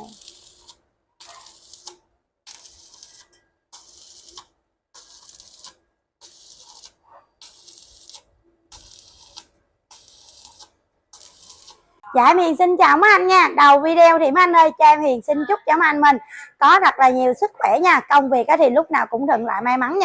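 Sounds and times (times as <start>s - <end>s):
welding arc crackling and hissing: 0.0s - 12.0s.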